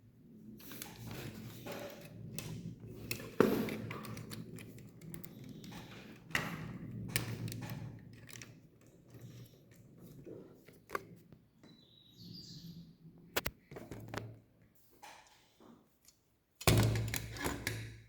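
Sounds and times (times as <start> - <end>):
plastic pieces clicking: 0.6 - 9.5.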